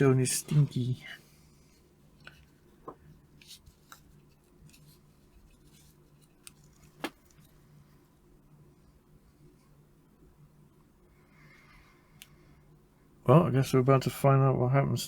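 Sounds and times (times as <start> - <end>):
low steady hum: 0.0 - 15.0.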